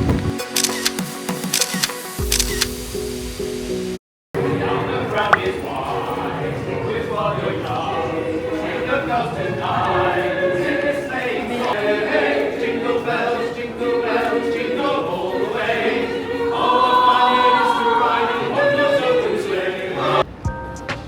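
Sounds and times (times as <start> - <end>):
choir singing: 4.4 - 20.4.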